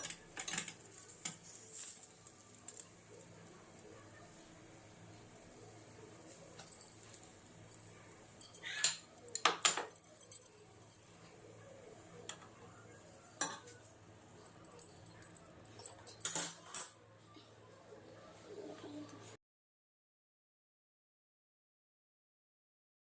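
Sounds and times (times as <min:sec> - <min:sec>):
utensils and dishes clinking: 0:00.0 - 0:02.9, 0:05.9 - 0:11.4, 0:12.2 - 0:17.0.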